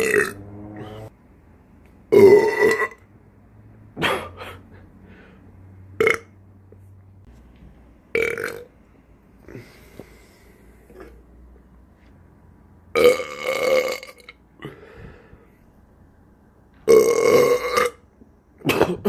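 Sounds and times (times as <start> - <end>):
man belching: 0.0 - 1.1, 2.1 - 3.0, 13.0 - 14.3, 16.9 - 18.0.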